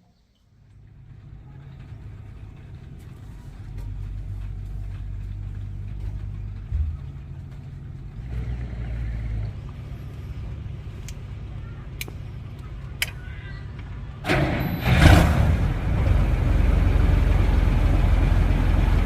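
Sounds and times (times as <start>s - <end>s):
boat engine humming: 0.4s - 19.0s.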